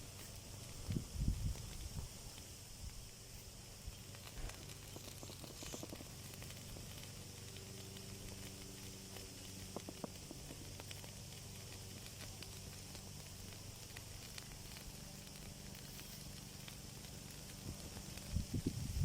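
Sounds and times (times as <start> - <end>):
steady low hum: 0.0 - 19.0
wood fire crackling: 0.0 - 19.0.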